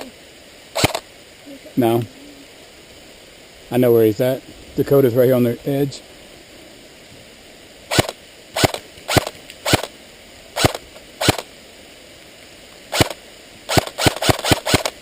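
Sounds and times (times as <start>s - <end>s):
airsoft gun shots: 0.8s - 1.0s, 7.9s - 9.9s, 10.6s - 11.5s, 12.9s - 15.0s.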